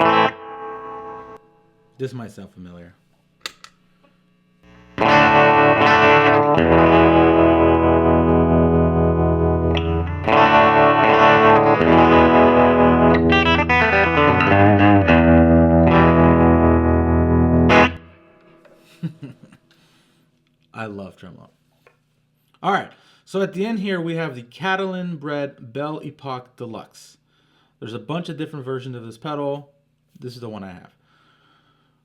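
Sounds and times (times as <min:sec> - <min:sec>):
electric guitar with tremolo: 0:00.0 - 0:01.6, 0:04.7 - 0:18.8.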